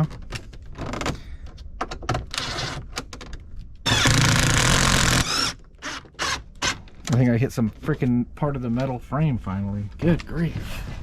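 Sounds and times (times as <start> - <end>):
cordless drill driving a screw: 3.9 - 6.7.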